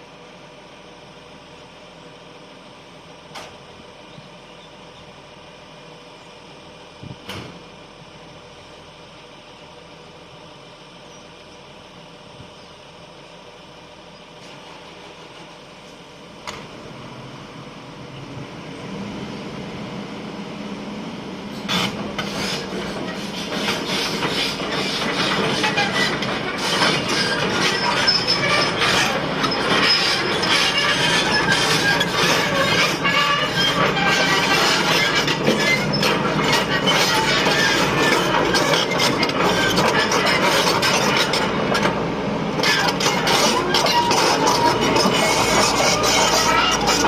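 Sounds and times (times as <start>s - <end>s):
excavator engine: 0.0s - 47.0s
metallic clanking and squealing: 21.5s - 42.0s, 42.6s - 47.0s.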